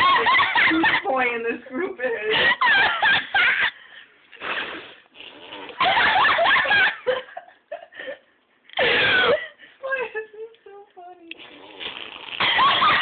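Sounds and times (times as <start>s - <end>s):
laughter: 0.0s - 1.2s, 2.3s - 3.9s, 5.8s - 8.2s, 12.4s - 13.0s
person making fake fart noises: 4.4s - 6.0s, 11.3s - 13.0s.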